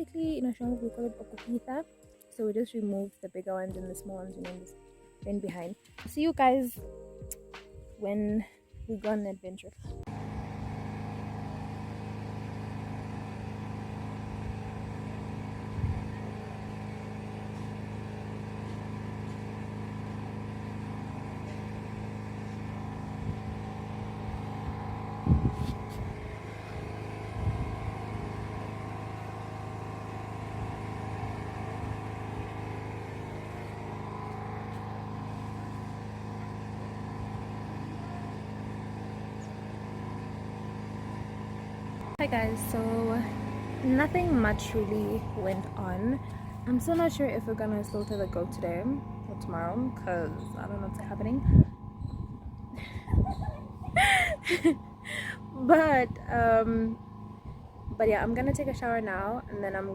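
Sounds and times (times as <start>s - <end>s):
vehicle engine running: 0.0s - 1.9s, 3.6s - 59.9s.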